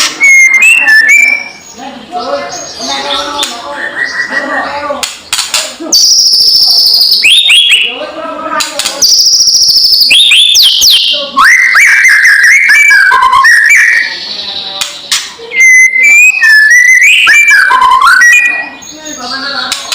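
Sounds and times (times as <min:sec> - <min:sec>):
bird whistling calls: 0:00.0 - 0:01.8, 0:02.6 - 0:04.6, 0:06.0 - 0:08.0, 0:09.0 - 0:14.6, 0:15.4 - 0:19.8
bird buzzy trill: 0:02.7 - 0:07.8, 0:09.0 - 0:14.4.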